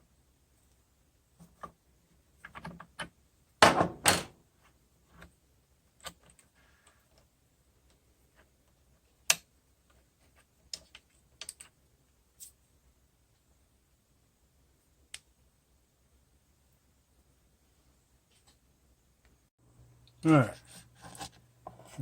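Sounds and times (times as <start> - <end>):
small parts clicking and knocking: 1.4 - 4.3, 5.1 - 12.6.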